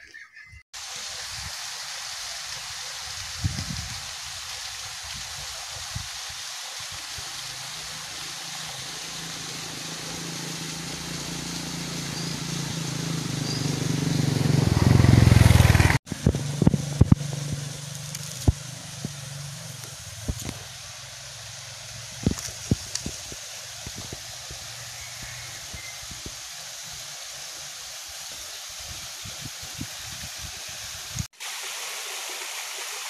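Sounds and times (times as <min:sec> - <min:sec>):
steady hiss: 0:00.8 - 0:14.6, 0:16.0 - 0:33.0
vehicle engine approaching: 0:09.0 - 0:22.0.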